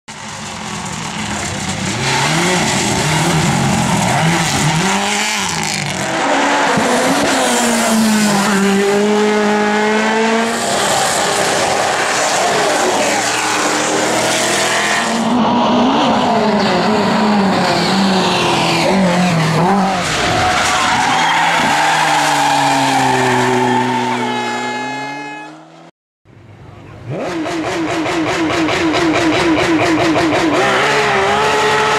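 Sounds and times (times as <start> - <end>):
racing car engine revving: 0.2 - 25.9, 27.0 - 31.9
tyres squealing: 19.9 - 25.1.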